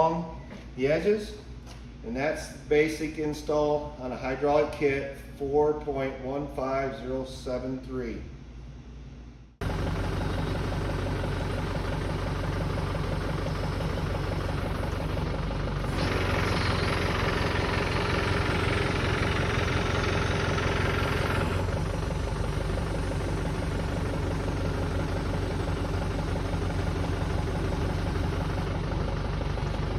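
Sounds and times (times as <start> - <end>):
tractor engine running: 9.6 - 29.9.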